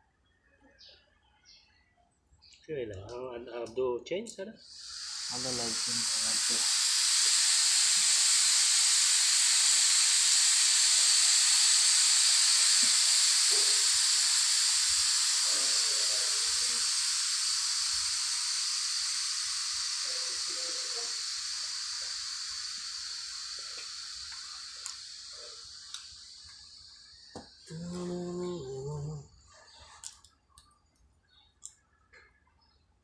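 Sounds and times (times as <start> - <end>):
pressurised air hissing: 4.6 - 29.9.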